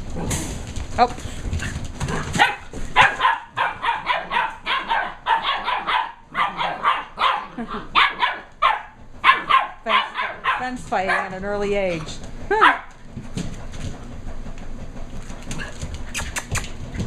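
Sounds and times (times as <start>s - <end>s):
puppies barking: 1.6s - 11.6s, 12.5s - 13.0s.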